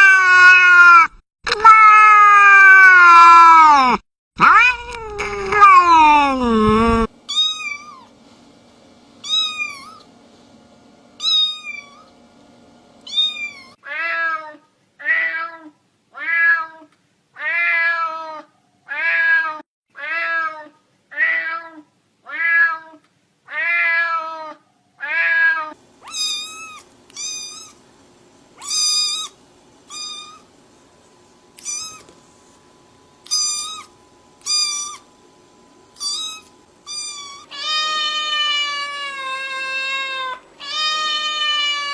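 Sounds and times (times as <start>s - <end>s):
high thin cat meow: 0.0s - 8.1s, 13.1s - 27.8s, 31.6s - 32.1s, 36.0s - 41.9s.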